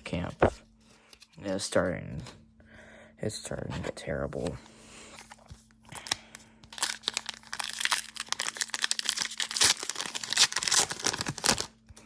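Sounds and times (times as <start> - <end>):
foil wrapper crinkling and tearing: 5.2 - 11.8.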